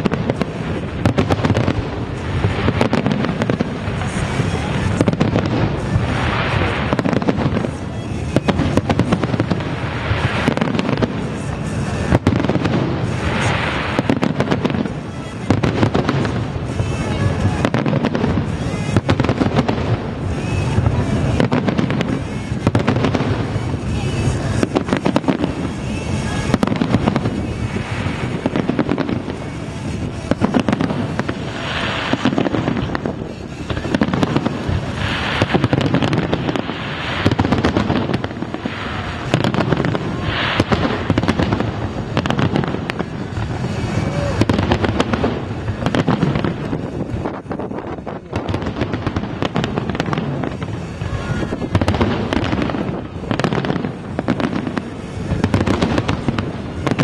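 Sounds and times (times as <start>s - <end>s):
fireworks bangs: 0.0s - 57.0s
fireworks crackling: 0.0s - 57.0s.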